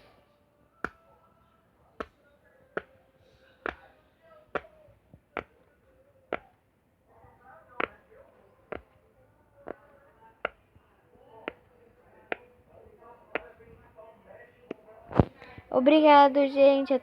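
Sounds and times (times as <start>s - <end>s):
taps on fidget toy: 3.6s - 3.9s, 4.5s - 4.7s, 6.3s - 6.5s, 7.8s - 8.0s, 8.7s - 8.9s, 11.4s - 11.7s, 13.3s - 13.5s.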